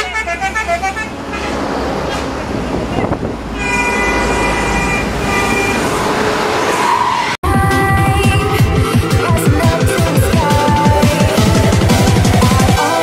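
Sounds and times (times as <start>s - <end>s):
multi-tone bus air horn: 0.0s - 7.0s
diesel bus passing: 0.0s - 7.4s.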